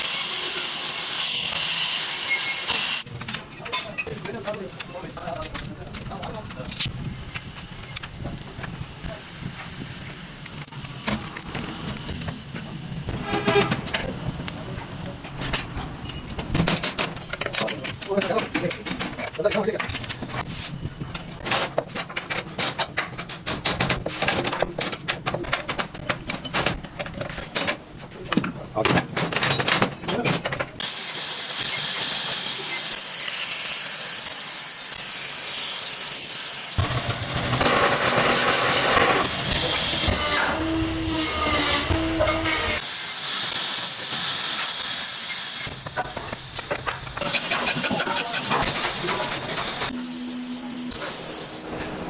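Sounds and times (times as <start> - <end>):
hissing machine: 0.0 - 3.1, 30.8 - 52.0
rapid irregular clicks and knocks: 13.6 - 30.9, 45.6 - 49.9
short steady tones: 49.9 - 51.7.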